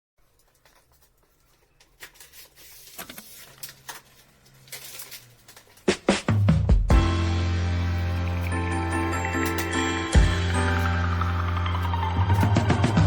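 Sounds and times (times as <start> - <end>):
rustling handling noise: 0.2 - 6.4
music: 5.9 - 13.0.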